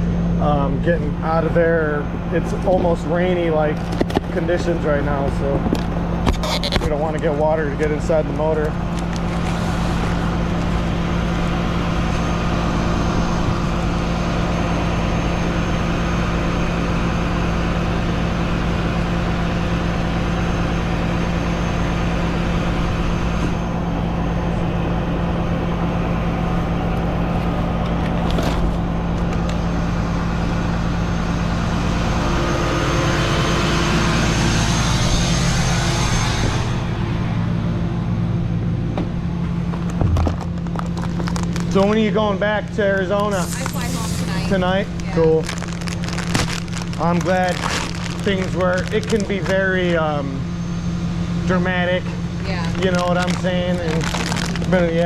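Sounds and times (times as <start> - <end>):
vehicle engine idling: 0.0 - 55.0
rising hiss: 43.3 - 44.8.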